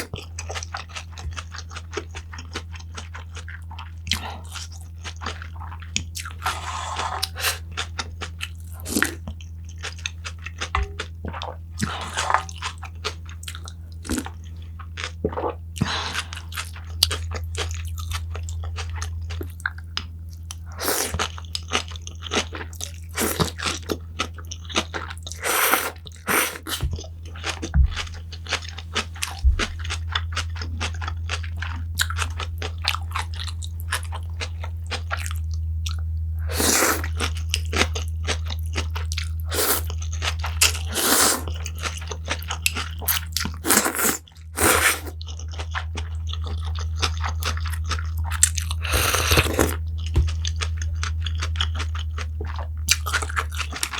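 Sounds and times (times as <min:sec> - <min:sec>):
person crunching and chewing: 0:00.0 - 0:53.9
low hum: 0:26.1 - 0:38.2.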